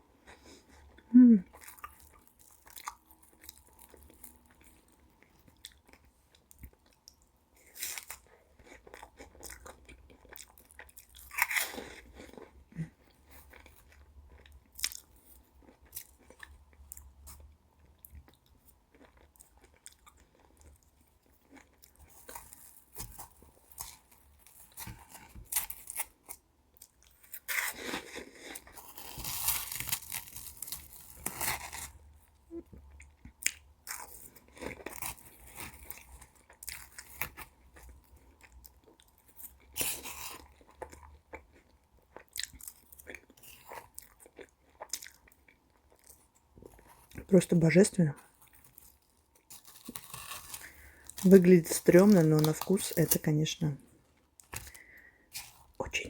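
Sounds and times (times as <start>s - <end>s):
person chewing: 0.1s - 47.3s, 48.2s - 55.8s
meringue crunching: 49.5s - 53.6s.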